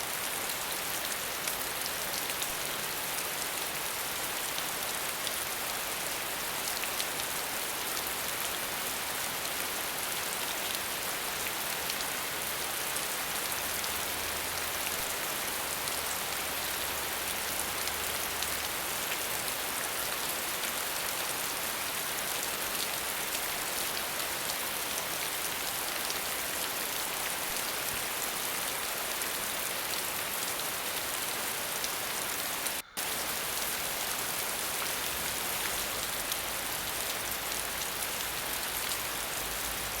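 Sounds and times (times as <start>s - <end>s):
waterfall hiss: 0.0s - 40.0s.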